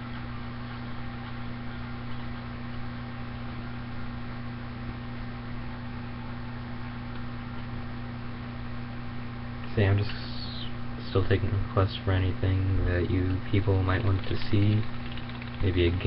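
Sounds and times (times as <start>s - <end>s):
low electrical hum: 0.0s - 16.0s
constant hiss: 8.9s - 16.0s.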